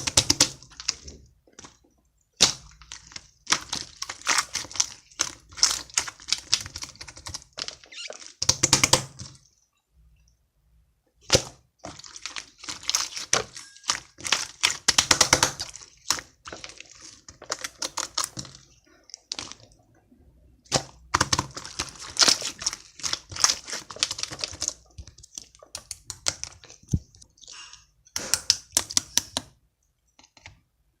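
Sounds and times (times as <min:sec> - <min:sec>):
slime crackling and popping: 0:02.4 - 0:09.4, 0:11.2 - 0:19.8, 0:20.6 - 0:27.2.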